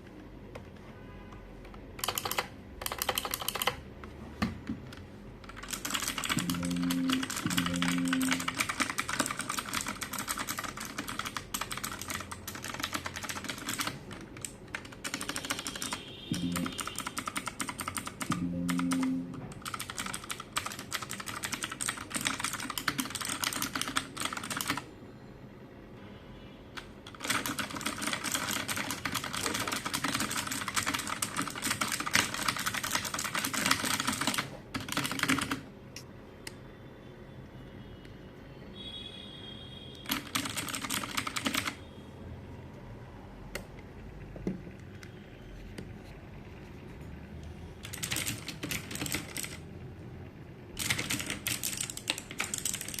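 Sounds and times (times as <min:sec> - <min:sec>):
mechanical keyboard typing: 0:01.7 - 0:03.8, 0:04.8 - 0:24.9, 0:26.8 - 0:35.7, 0:40.1 - 0:41.8, 0:47.8 - 0:49.7, 0:50.8 - 0:53.0.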